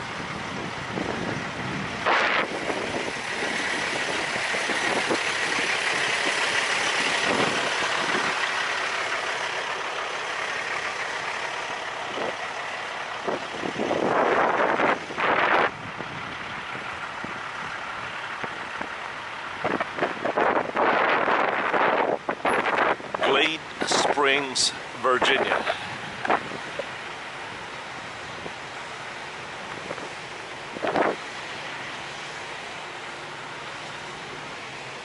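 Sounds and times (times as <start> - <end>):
wind buffeting microphone: 0.0 - 8.5, 12.0 - 24.4, 25.1 - 27.0, 29.6 - 31.3
trucks running: 0.0 - 35.0.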